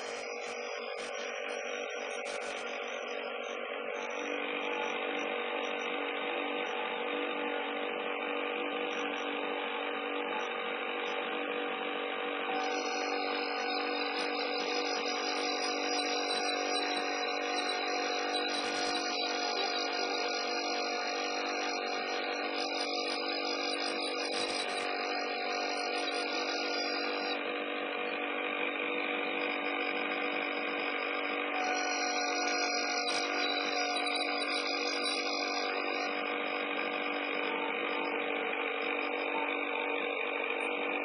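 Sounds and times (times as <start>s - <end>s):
high machine whine: 0.0s - 41.0s
machine running: 12.4s - 41.0s.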